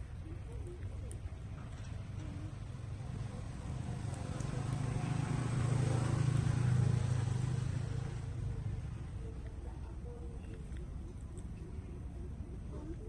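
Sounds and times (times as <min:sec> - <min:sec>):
vehicle passing by: 0:02.0 - 0:09.4.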